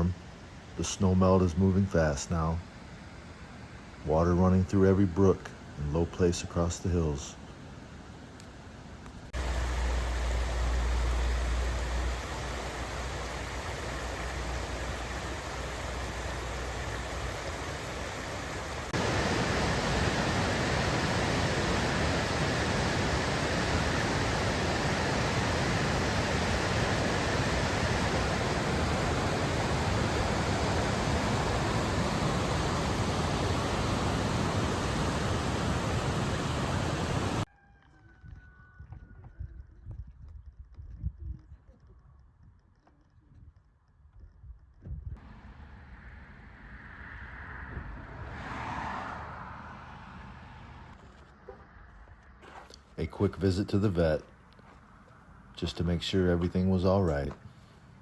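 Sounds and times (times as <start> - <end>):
brook rushing water: 9.3 - 37.5.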